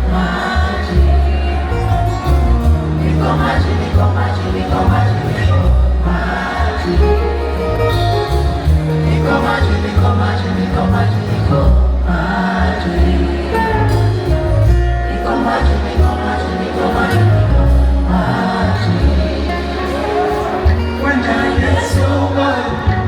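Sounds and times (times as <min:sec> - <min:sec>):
crowd singing along: 0:00.0 - 0:23.0
loud live music with heavy bass: 0:00.0 - 0:23.0
voices singing together: 0:00.0 - 0:23.0.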